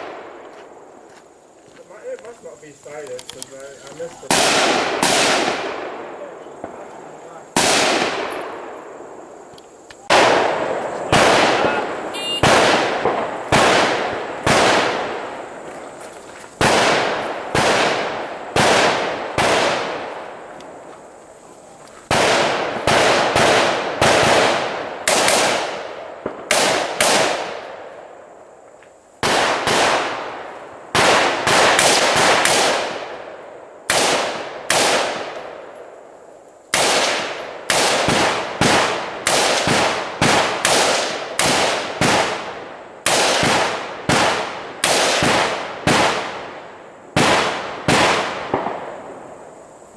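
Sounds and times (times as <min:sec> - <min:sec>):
rifle shots echoing: 0:00.0 - 0:00.9, 0:03.9 - 0:16.0, 0:16.6 - 0:20.8, 0:22.1 - 0:28.3, 0:29.2 - 0:36.0, 0:36.7 - 0:49.4.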